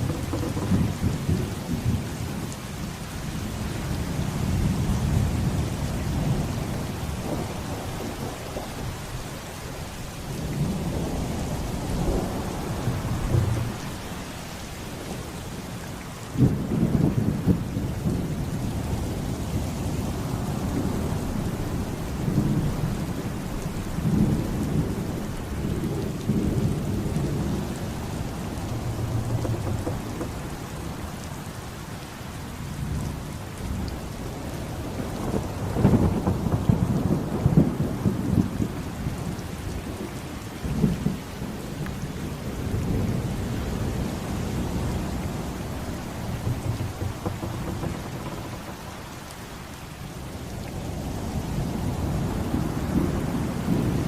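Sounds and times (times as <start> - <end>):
rolling thunder: 0.0 - 2.6, 10.3 - 14.5, 20.6 - 31.6, 34.8 - 39.3, 45.5 - 49.6
steady rain: 0.0 - 54.0.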